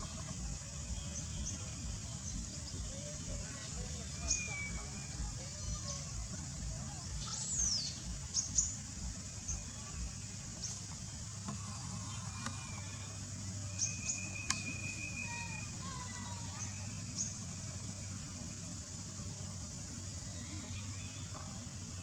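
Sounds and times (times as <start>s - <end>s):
bird trill: 0.0s - 10.8s, 11.8s - 17.6s
small birds chirping: 0.0s - 22.0s
steady low rumble: 0.0s - 22.0s.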